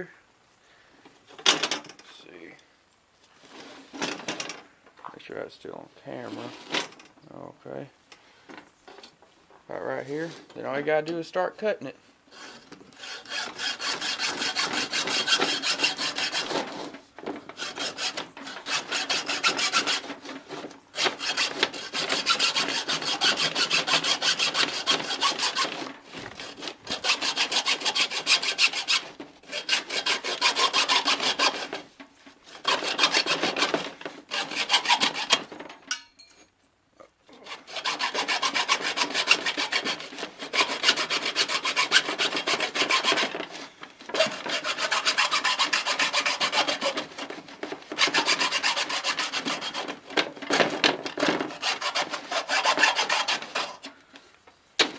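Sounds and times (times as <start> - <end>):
hacksaw cutting metal pipe: 12.3 - 36.1, 37.3 - 54.0.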